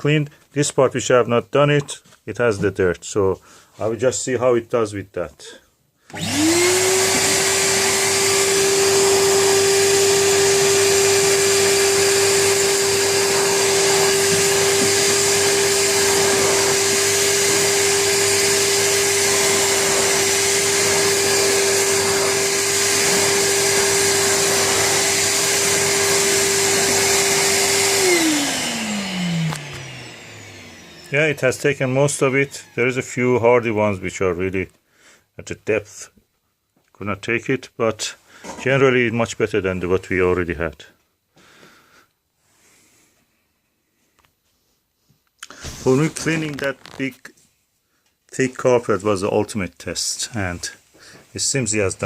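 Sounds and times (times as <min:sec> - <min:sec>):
vacuum cleaner motor whine: 0:06.1 - 0:33.4.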